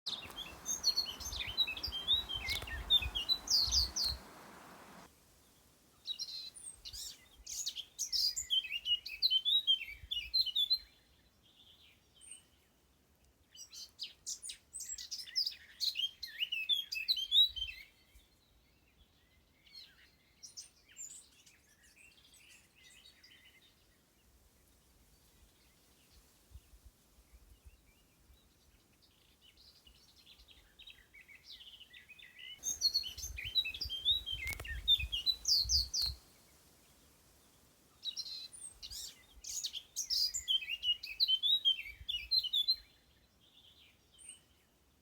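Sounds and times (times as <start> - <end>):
small birds chirping: 0.0 - 12.8, 13.5 - 45.0
steady background hiss: 0.1 - 7.2, 32.6 - 41.2.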